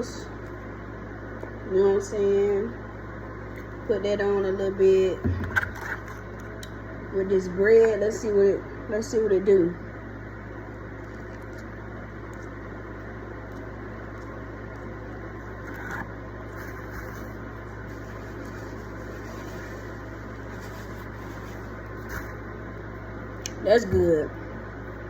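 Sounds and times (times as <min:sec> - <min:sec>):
low mechanical hum: 0:00.0 - 0:25.0
rustling: 0:15.6 - 0:22.5.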